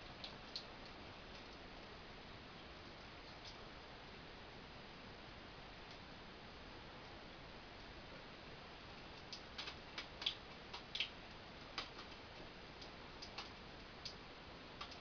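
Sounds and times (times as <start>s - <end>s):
faint steady hiss: 0.0s - 15.0s
light sharp clicks and taps: 9.2s - 14.2s, 14.8s - 15.0s.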